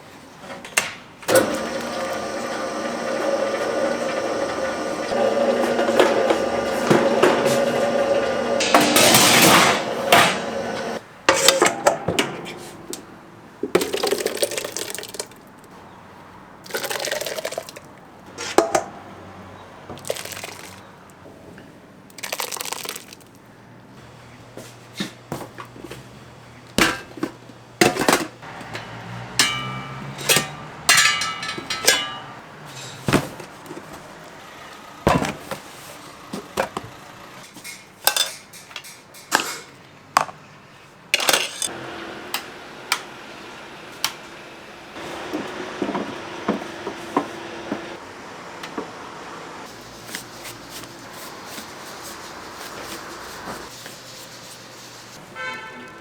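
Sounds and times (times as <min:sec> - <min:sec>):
metal molds knocking and clinking: 0:27.9 - 0:33.9.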